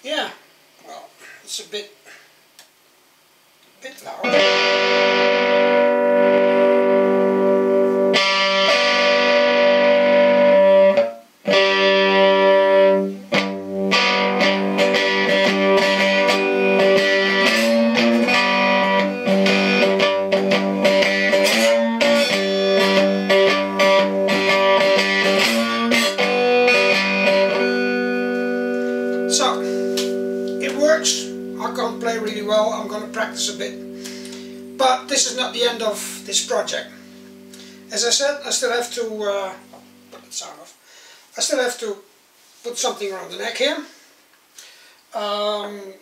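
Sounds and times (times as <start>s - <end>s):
guitar strummed and picked: 4.2s - 40.3s.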